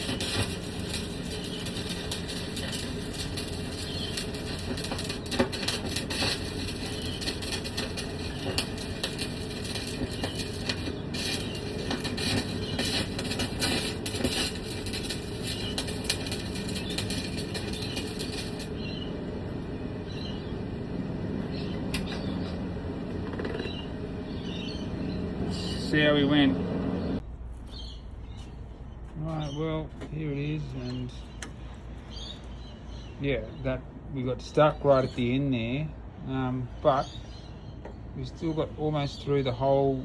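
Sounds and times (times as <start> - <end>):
welding arc crackling: 0.0 - 19.0.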